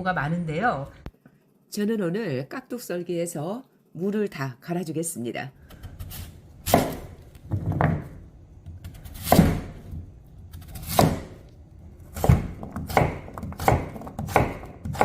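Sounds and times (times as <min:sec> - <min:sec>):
knife chopping on cutting board: 0:05.7 - 0:07.1, 0:08.8 - 0:11.4, 0:12.1 - 0:15.0.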